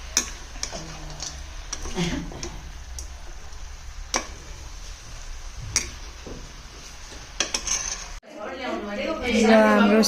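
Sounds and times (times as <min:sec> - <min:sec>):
metal utensil clinking on pan: 0:07.4 - 0:08.2.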